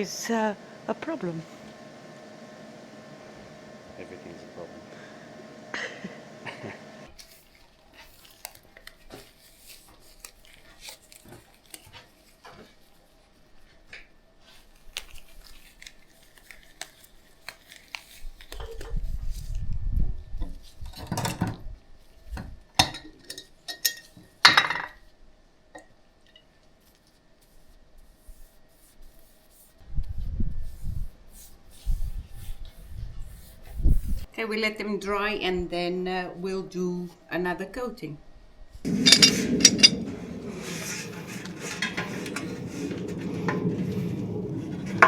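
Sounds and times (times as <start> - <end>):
light clinks and taps: 38.9 - 40.6
low rumble: 38.9 - 45.0.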